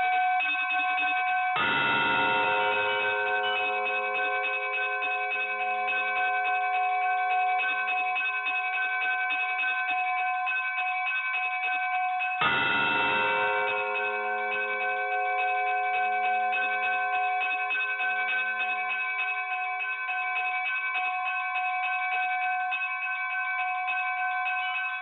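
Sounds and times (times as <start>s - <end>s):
bells ringing rapidly: 1.5s - 8.4s, 12.3s - 19.0s.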